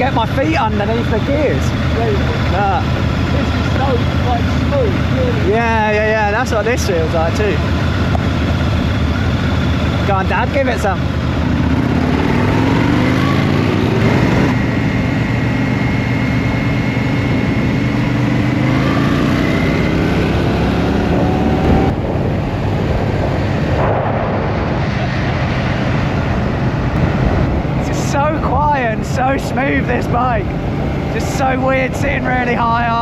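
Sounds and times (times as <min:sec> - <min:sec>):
motorcycle engines accelerating: 0:00.0 - 0:33.0
wind on microphone: 0:19.6 - 0:31.3.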